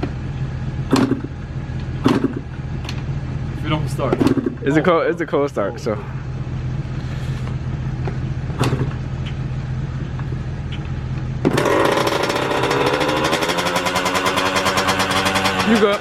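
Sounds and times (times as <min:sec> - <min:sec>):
low steady hum: 0:00.0 - 0:11.6
two-stroke engine running: 0:00.8 - 0:16.0.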